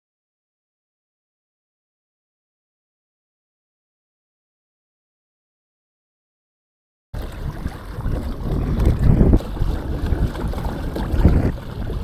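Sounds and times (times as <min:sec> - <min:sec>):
faint wash of water: 0:07.2 - 0:12.0
wind buffeting microphone: 0:07.2 - 0:12.0.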